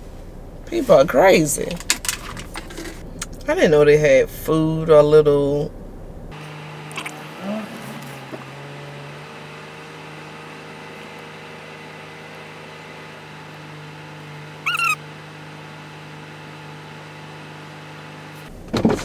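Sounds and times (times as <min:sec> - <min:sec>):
car engine idling: 0:00.0 - 0:19.0
high-pitched squeak: 0:14.7 - 0:15.0.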